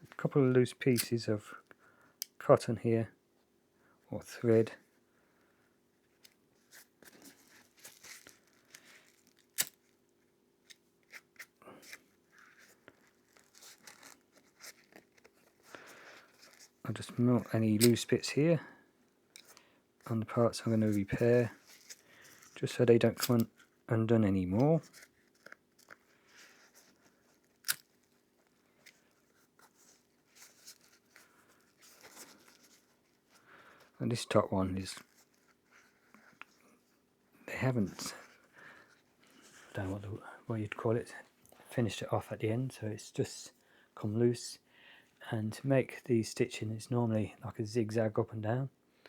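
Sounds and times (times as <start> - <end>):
soft rustling of webbing: 5.9 - 40.1.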